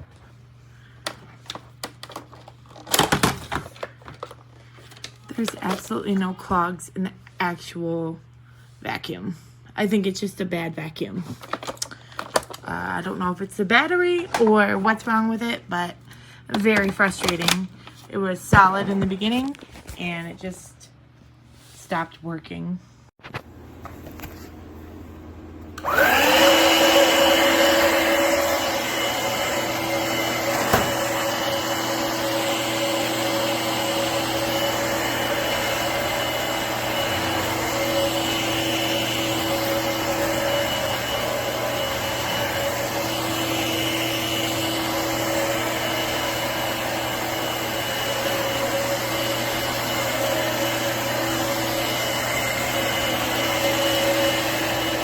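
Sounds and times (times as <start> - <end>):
vacuum motor whining: 25.5 - 55.0.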